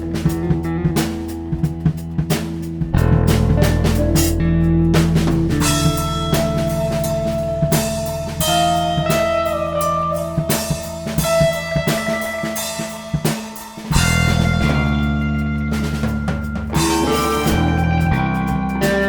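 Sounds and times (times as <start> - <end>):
bass guitar: 0.0 - 19.0
drum kit: 0.0 - 19.0
electric guitar lead notes: 2.8 - 19.0.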